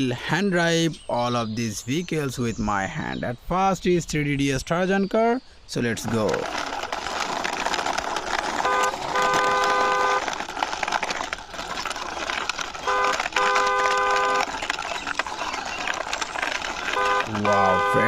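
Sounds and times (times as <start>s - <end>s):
two-tone car horn honking: 8.6s - 10.2s, 12.8s - 14.5s, 16.9s - 18.0s.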